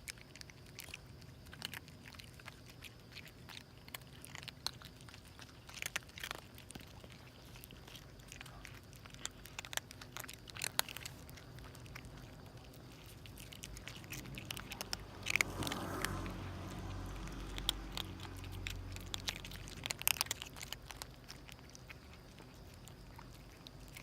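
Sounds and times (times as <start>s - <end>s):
cats crunching and chewing: 0.0s - 24.0s
low background rumble: 0.9s - 24.0s.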